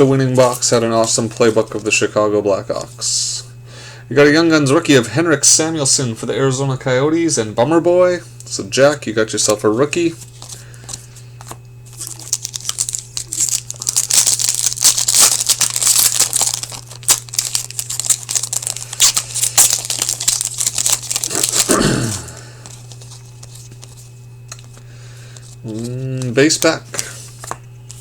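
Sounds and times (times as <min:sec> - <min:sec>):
foil wrapper tearing and crinkling: 0:00.3 - 0:01.9, 0:10.2 - 0:28.0.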